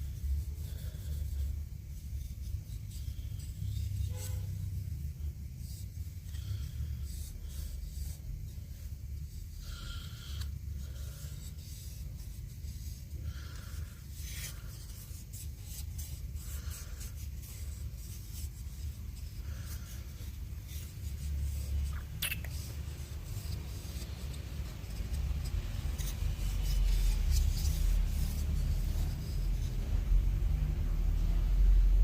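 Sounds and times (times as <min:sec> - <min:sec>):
scraping and rubbing on wood: 0:05.2 - 0:30.2.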